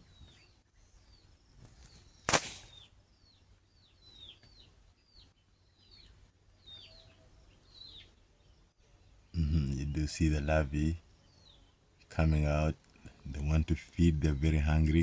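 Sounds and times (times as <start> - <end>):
bird chirping: 0.0 - 15.0
sharp click: 2.3 - 2.7.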